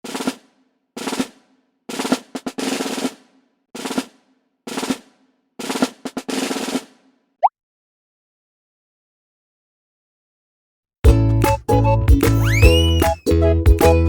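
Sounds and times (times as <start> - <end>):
snare drum rolls: 0.0 - 7.1.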